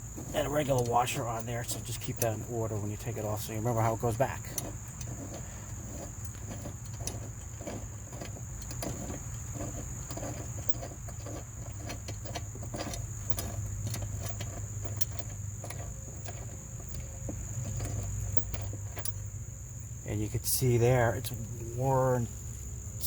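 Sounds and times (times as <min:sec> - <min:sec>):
clicks and clinks of metal parts: 0:00.0 - 0:20.0
high-pitched insect trilling: 0:07.5 - 0:23.0.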